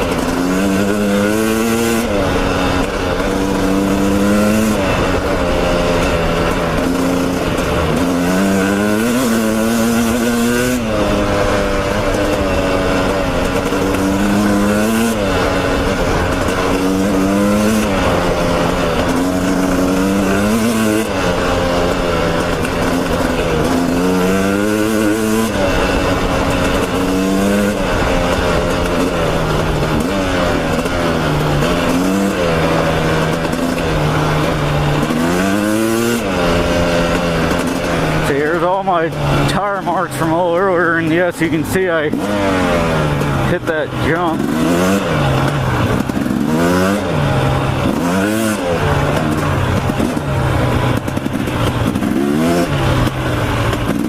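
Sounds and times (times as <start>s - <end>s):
dirt bike engine revving: 0.0s - 54.0s.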